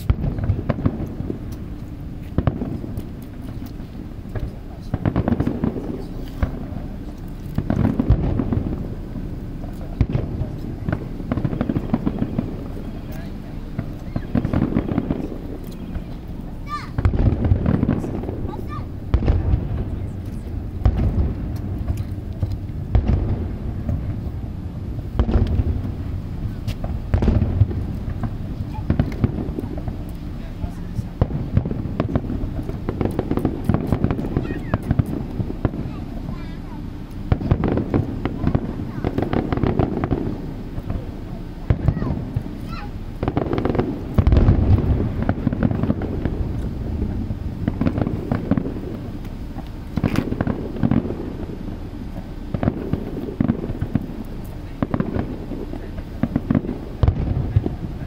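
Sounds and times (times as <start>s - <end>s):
firework shells booming: 0.0s - 58.0s
low rolling rumble: 0.0s - 58.0s
faint firework whistle: 11.4s - 17.0s.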